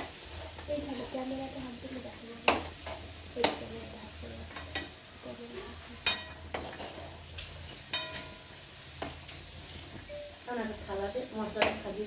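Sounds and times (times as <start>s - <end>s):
oil frying sizzle: 0.0s - 12.0s
metal spatula clinking on pan: 6.0s - 6.7s, 7.8s - 9.2s.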